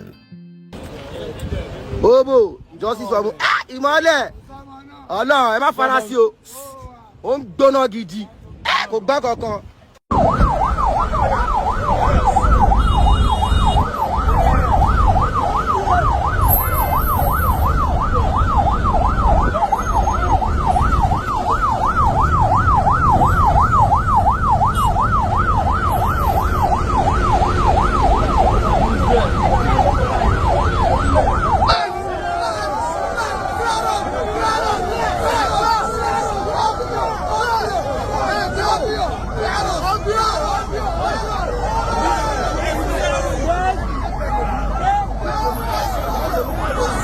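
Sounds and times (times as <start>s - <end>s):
electronic siren yelping: 10.1s - 39.6s.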